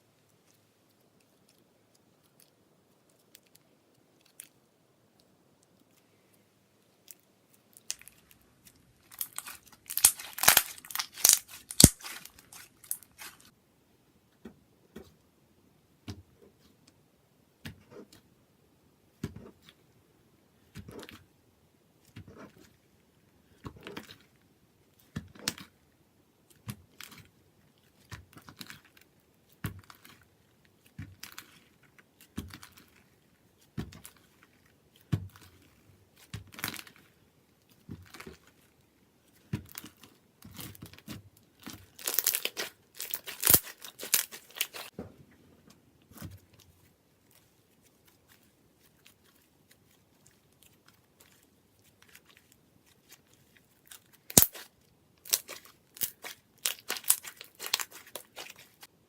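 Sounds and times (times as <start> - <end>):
slime squished by hand: 7.1 - 13.5, 39.4 - 44.9, 47.2 - 58.9.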